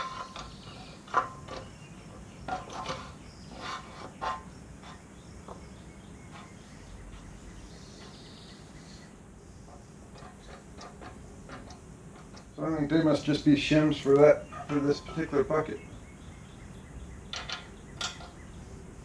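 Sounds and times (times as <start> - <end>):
metal clinks and knocks: 17.3 - 18.4.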